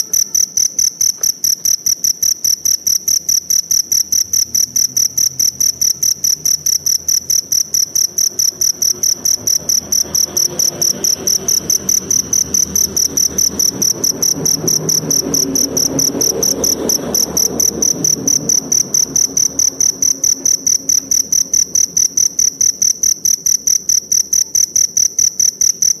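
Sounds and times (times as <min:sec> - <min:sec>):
cricket chirping: 0:00.0 - 0:26.0.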